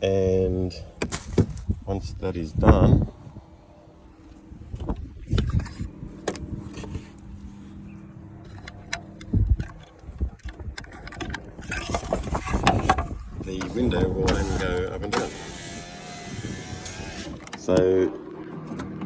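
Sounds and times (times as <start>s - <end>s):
power window motor humming: 13.6s - 17.8s.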